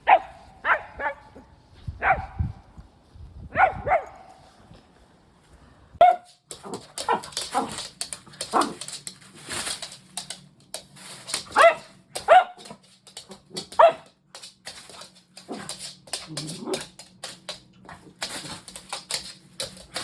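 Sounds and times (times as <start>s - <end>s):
dog barking and yelping: 0.0s - 1.4s, 2.0s - 2.4s, 3.5s - 4.3s, 6.0s - 7.8s, 11.5s - 12.7s, 13.7s - 14.1s.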